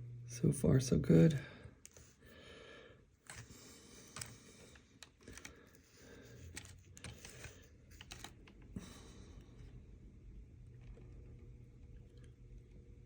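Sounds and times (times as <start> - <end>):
low hum: 0.0 - 2.4.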